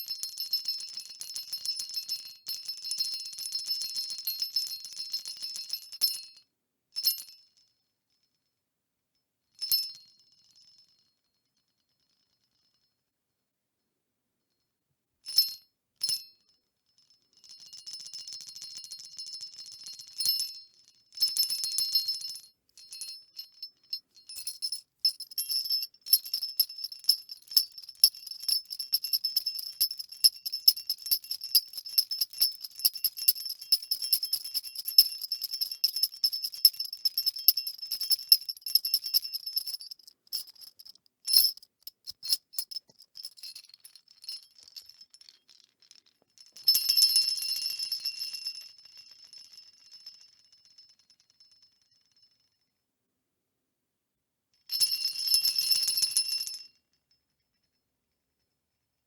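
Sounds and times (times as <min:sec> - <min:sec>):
jingle bells shaking: 0:23.4 - 0:50.4.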